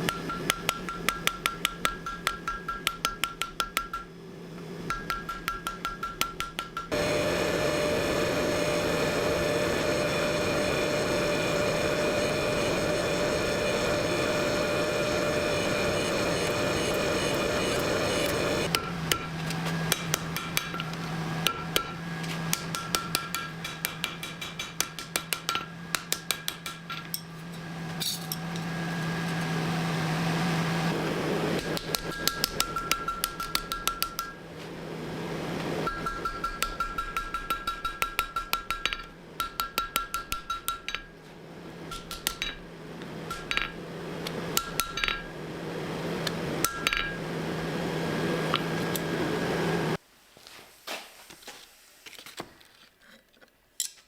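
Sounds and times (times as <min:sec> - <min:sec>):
hammer striking steel: 0:00.0 - 0:04.1, 0:04.9 - 0:07.0, 0:19.9 - 0:27.3, 0:31.6 - 0:34.4, 0:35.9 - 0:41.1, 0:44.6 - 0:45.3, 0:46.6 - 0:47.2
loud mechanical running noise: 0:06.9 - 0:22.8, 0:27.3 - 0:32.6, 0:42.8 - 0:50.0.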